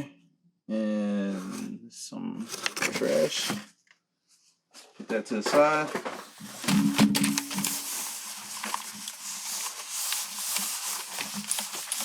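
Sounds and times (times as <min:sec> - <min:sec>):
packaging rustling and crinkling: 0:02.5 - 0:03.7, 0:05.9 - 0:12.0.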